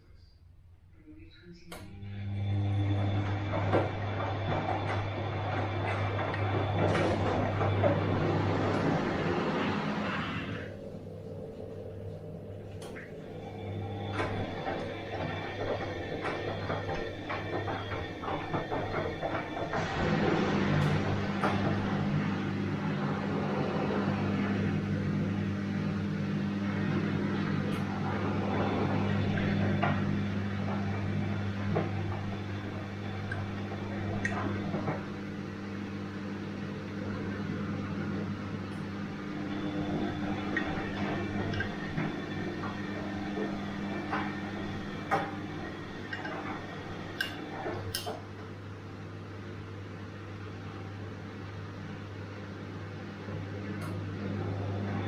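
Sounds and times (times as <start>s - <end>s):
washing machine running: 1.3s - 55.0s
sharp clicks and knocks: 40.1s - 48.2s.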